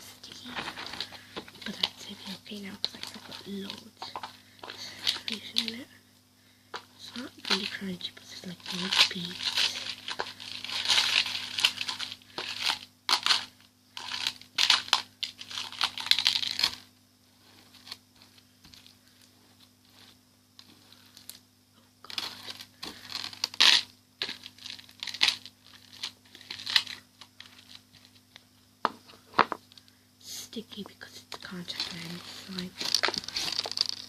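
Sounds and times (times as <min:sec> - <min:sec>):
beaded slime squeezed crinkling: 0:08.5 - 0:16.8, 0:31.8 - 0:34.0.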